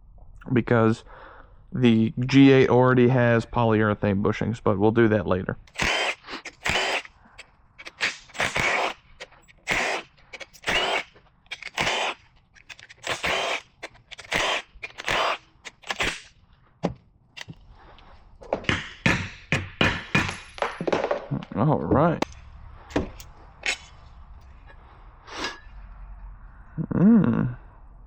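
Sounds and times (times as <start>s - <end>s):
impact wrench bursts: 5.7s - 7.2s, 7.8s - 16.3s.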